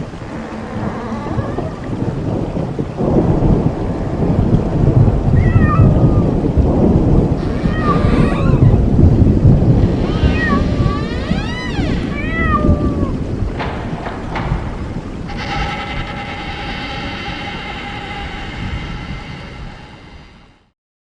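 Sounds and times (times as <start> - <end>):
loud low rumble: 0.0 - 20.7
cat meowing: 0.2 - 2.0, 5.3 - 6.4, 7.4 - 8.9, 9.7 - 13.3.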